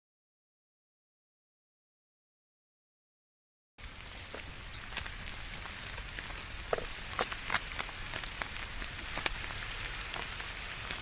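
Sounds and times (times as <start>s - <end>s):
fish sizzling in hot oil: 3.8s - 11.0s
oil popping and crackling: 3.8s - 11.0s.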